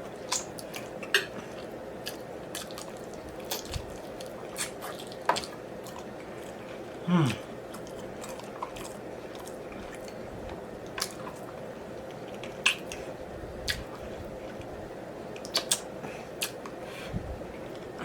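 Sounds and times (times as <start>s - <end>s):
faint steady hum: 0.0s - 18.0s
mouth eating sounds: 7.0s - 8.9s.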